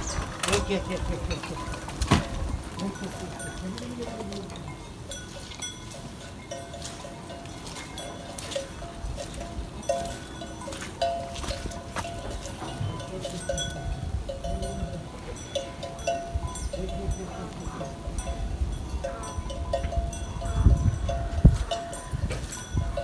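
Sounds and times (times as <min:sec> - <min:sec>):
wind thumps on microphone: 0:00.0 - 0:02.8, 0:17.9 - 0:23.0
livestock bells clanking: 0:00.0 - 0:23.0.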